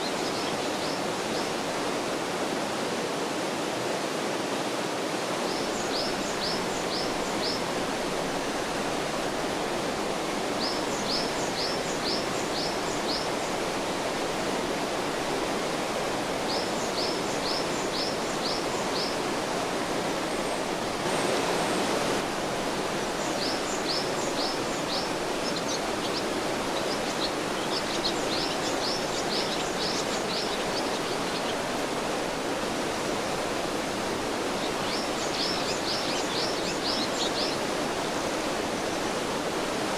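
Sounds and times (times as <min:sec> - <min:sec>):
stream flowing over rocks: 0:00.0 - 0:39.9
songbird singing: 0:05.5 - 0:14.6, 0:16.4 - 0:22.2, 0:22.9 - 0:31.8, 0:34.5 - 0:38.2.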